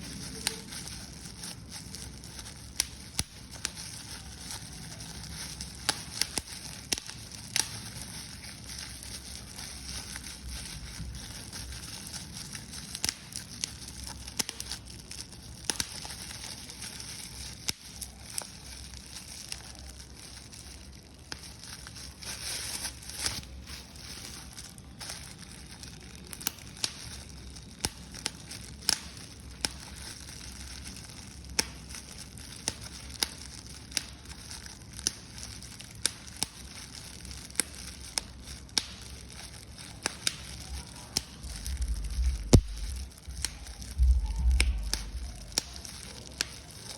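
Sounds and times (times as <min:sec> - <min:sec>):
paper crumpling: 0:00.0 - 0:46.9.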